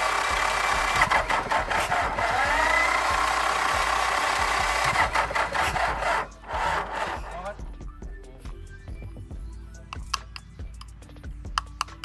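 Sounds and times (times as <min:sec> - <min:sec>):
diesel engine running: 0:00.0 - 0:08.4.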